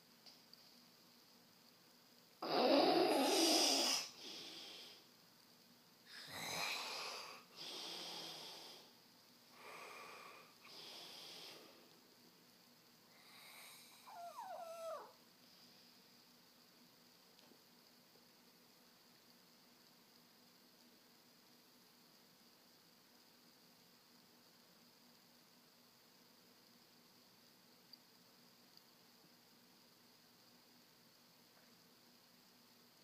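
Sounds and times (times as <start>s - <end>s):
person snoring loudly: 2.4s - 4.9s, 6.1s - 8.9s.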